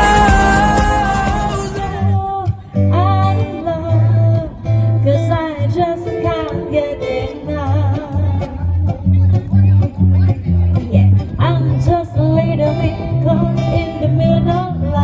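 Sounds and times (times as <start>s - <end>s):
live band playing: 0.0s - 2.2s.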